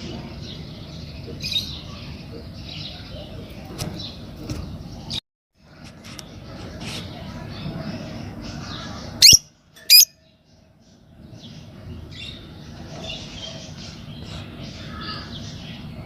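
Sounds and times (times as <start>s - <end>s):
lovebirds chattering and chirping: 0.0s - 5.2s, 6.1s - 16.0s
loud shrill bird calls: 9.2s - 10.2s.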